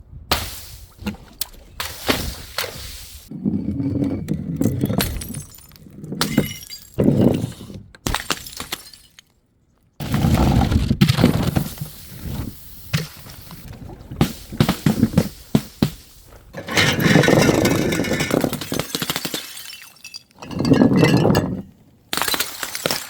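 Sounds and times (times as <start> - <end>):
glass bottles smashing: 4.5 - 9.4, 16.6 - 23.0.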